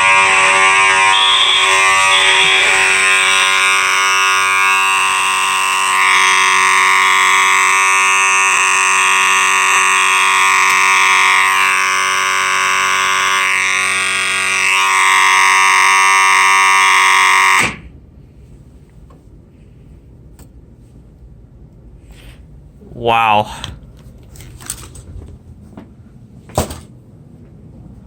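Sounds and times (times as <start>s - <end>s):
fire alarm horns: 0.0s - 17.9s.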